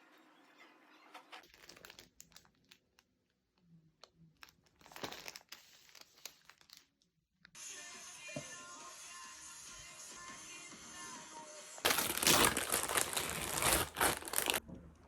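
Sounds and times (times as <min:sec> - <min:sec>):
crinkling and crackling clicks: 0:01.2 - 0:07.6, 0:11.9 - 0:14.6.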